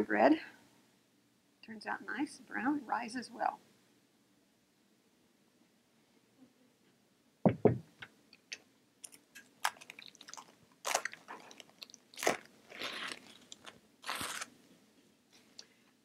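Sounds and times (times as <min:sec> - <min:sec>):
dull knocks: 0:07.4 - 0:07.9
crinkling rustling: 0:09.0 - 0:14.7.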